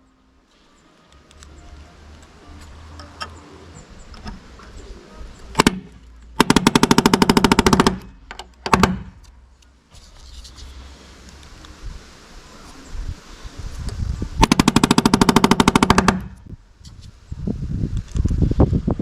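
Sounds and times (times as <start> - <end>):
power tool hammering: 5.6 - 9.2, 14.4 - 16.4.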